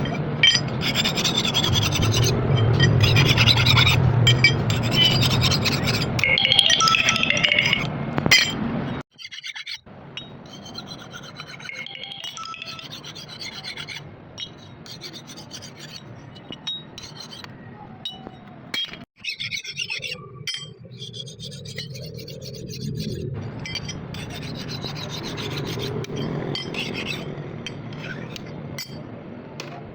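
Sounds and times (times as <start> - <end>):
rasping abrasion on axe: 0.0 - 6.2, 10.4 - 11.7, 12.7 - 17.5, 20.9 - 29.0.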